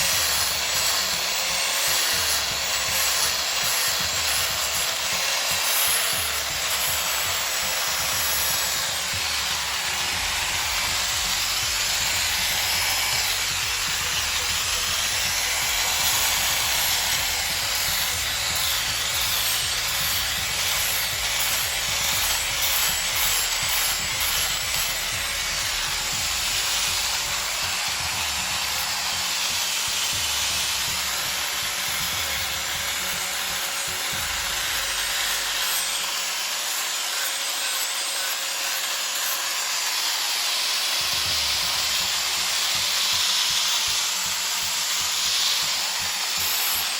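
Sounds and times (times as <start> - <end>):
power sander on wood: 0.0 - 46.9.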